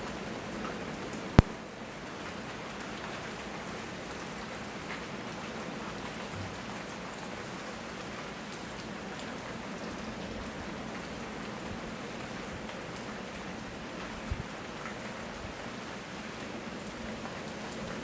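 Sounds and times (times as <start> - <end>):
rain pattering: 0.0 - 18.0
water drops ticking: 1.4 - 1.6.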